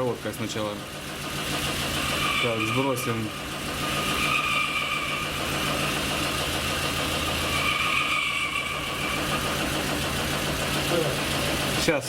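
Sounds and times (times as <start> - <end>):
car engine idling: 0.0 - 12.0
high-pitched squeal: 1.6 - 9.7.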